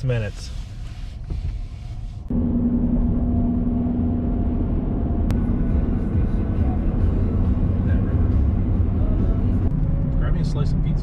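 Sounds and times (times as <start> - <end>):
road and engine rumble: 0.0 - 11.0
steady drone: 2.3 - 10.8.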